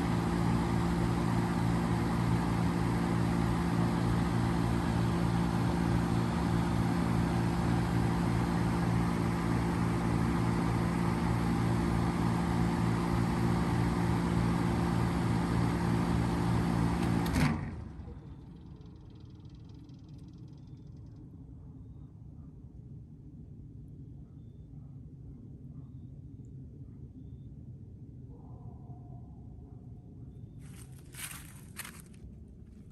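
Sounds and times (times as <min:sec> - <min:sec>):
heat pump compressor hum: 0:00.0 - 0:20.6
fan air noise: 0:00.0 - 0:21.6
faint low rumble: 0:17.8 - 0:32.9.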